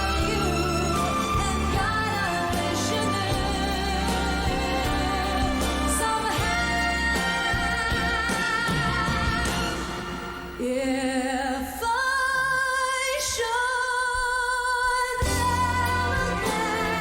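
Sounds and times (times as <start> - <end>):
band playing: 0.0 - 10.9, 15.2 - 17.0
woman singing a ballad: 0.0 - 17.0.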